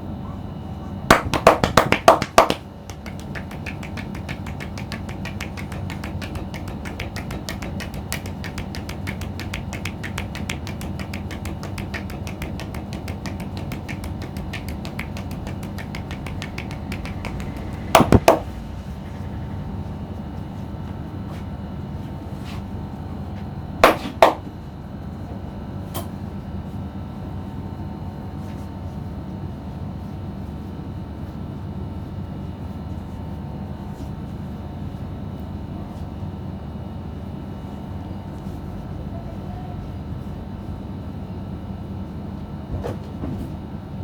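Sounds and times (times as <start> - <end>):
steady background hum: 0.0 - 44.0
sharp percussive massage strikes: 1.1 - 21.5, 23.8 - 24.4.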